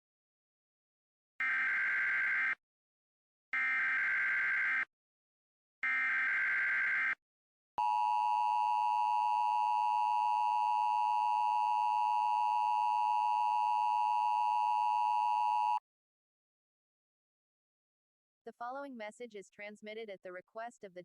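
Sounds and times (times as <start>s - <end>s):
two-tone emergency alert signal: 1.4s - 2.6s, 7.8s - 15.8s.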